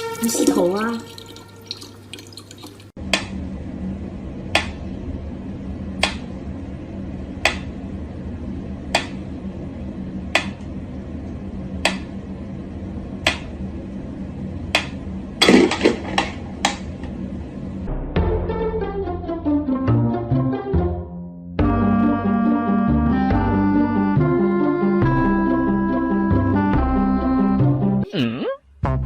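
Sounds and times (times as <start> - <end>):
low hum: 2.8 - 19.8.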